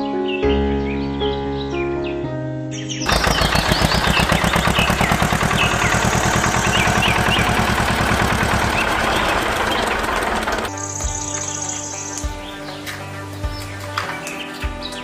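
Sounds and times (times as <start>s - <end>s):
birds chirping: 3.0s - 15.0s
small engine running: 3.1s - 10.7s.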